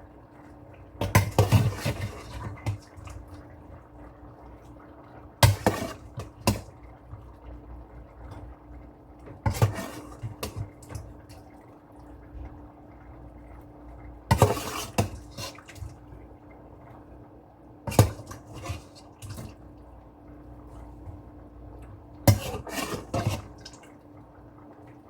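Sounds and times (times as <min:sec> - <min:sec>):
pots and pans clattering: 0:22.3 - 0:23.7.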